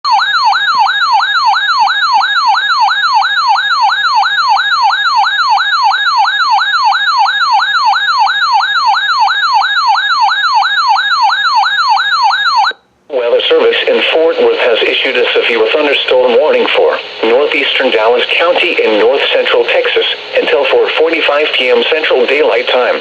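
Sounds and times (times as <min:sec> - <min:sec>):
electronic siren tone sweeping: 0:00.1 - 0:12.8.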